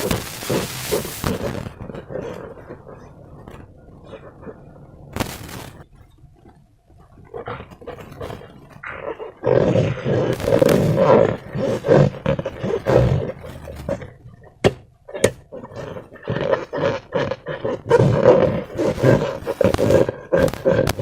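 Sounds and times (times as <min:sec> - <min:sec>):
sharp snaps: 0:00.0 - 0:01.8, 0:10.3 - 0:11.9, 0:18.8 - 0:21.0
slime squelching: 0:00.0 - 0:21.0.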